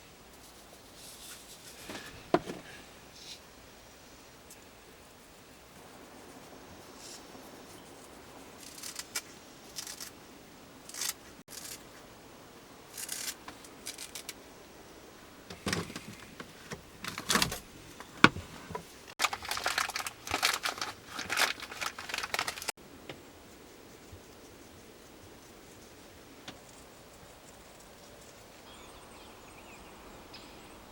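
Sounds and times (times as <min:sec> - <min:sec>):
rustling handling noises: 0:00.4 - 0:02.9, 0:15.4 - 0:22.8
crinkling and scraping: 0:01.0 - 0:02.8, 0:08.6 - 0:10.1, 0:10.9 - 0:11.8, 0:13.0 - 0:14.4, 0:15.5 - 0:22.8.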